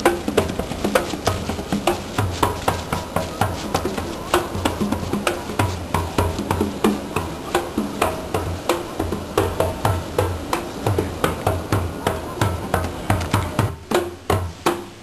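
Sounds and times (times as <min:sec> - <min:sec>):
rhythmic percussion music: 0:00.0 - 0:15.0.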